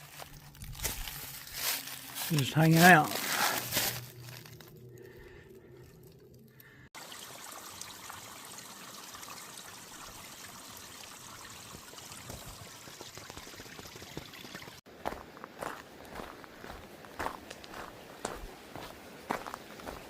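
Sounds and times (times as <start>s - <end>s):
footsteps: 0.0s - 4.8s
river water running: 7.0s - 20.0s.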